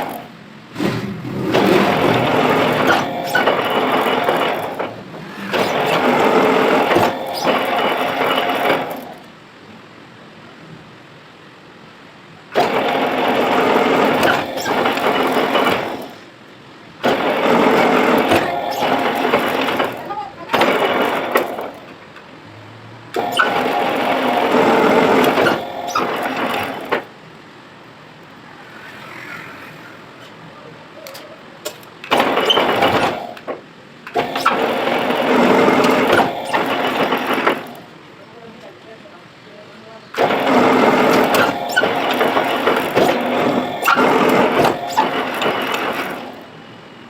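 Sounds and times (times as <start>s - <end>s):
lathe running: 0.0s - 9.3s, 12.6s - 16.3s, 17.0s - 22.0s, 23.1s - 27.3s, 32.1s - 38.0s, 40.2s - 47.0s.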